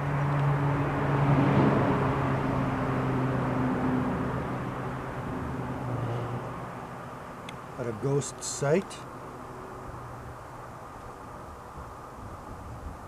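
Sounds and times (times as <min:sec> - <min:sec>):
low hum: 0:00.0 - 0:08.0.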